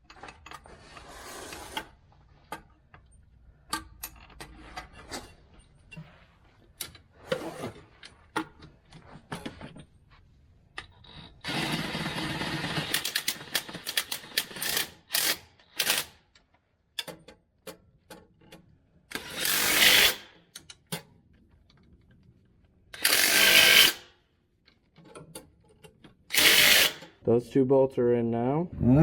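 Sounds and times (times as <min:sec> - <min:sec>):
clicks and knocks on bolts: 0:02.5 - 0:05.0, 0:16.3 - 0:18.8
power tool bursts: 0:26.3 - 0:27.0.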